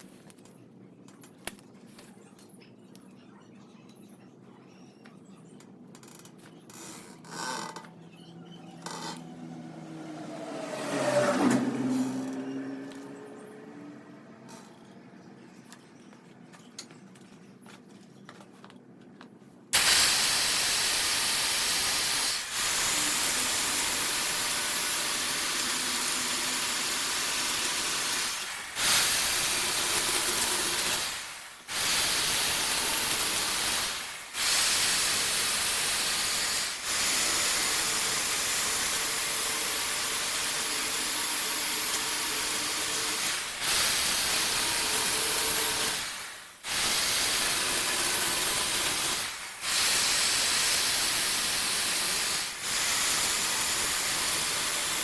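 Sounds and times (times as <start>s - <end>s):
compressed air hissing from nozzle: 19.8s - 55.0s.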